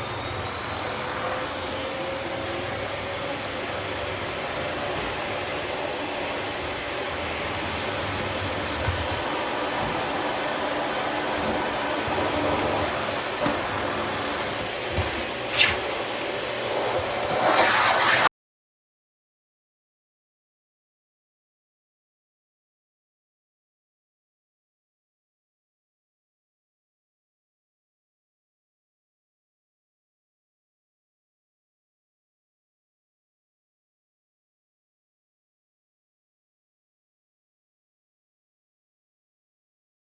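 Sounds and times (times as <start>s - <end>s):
vacuum cleaner running: 0.0s - 18.3s.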